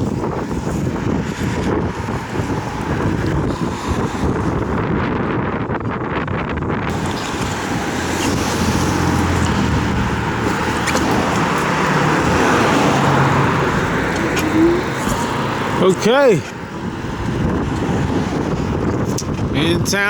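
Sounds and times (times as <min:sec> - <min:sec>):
wind buffeting microphone: 0:00.0 - 0:20.0
low vehicle running noise: 0:06.9 - 0:17.6.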